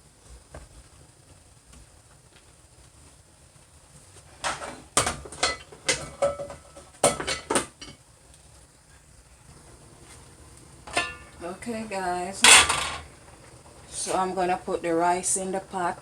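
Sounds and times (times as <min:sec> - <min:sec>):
pots and metal utensils clanking: 0:04.4 - 0:08.0, 0:10.8 - 0:11.5, 0:12.4 - 0:13.2.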